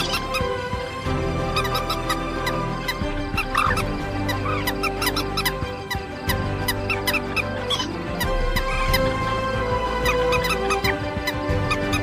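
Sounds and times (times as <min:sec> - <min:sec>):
bird squeaky nasal calls: 0:06.3 - 0:12.0.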